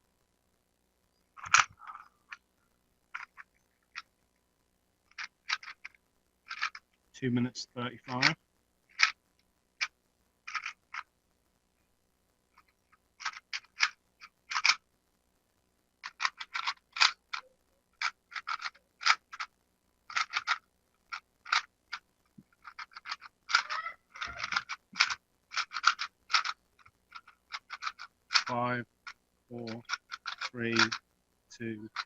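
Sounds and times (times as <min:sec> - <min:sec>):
puzzle cube twisting clicks: 0:01.4 - 0:02.0, 0:03.2 - 0:04.1, 0:05.1 - 0:06.8, 0:08.1 - 0:09.2, 0:10.5 - 0:11.1, 0:12.6 - 0:14.8, 0:16.0 - 0:19.5, 0:20.1 - 0:31.0.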